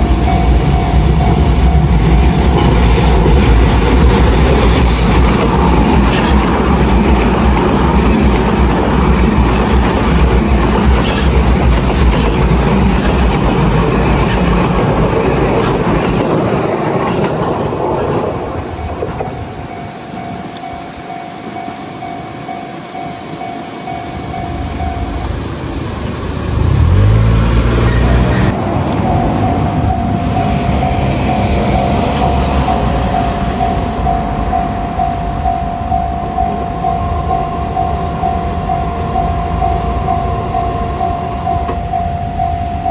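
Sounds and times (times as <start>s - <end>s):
crossing warning bell ringing: 0.0s - 17.3s, 18.4s - 42.9s
train wheels clattering on rails: 0.0s - 42.9s
train motor hum: 23.9s - 42.9s.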